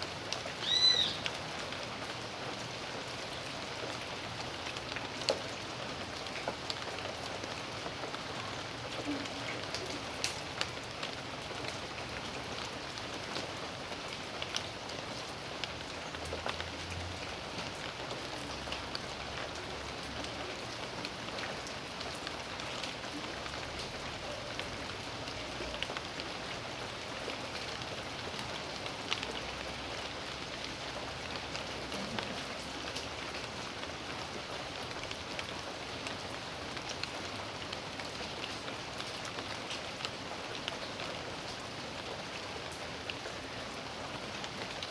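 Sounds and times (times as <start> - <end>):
steady rain falling: 0.0 - 44.9
raindrop ticks: 8.8 - 11.2.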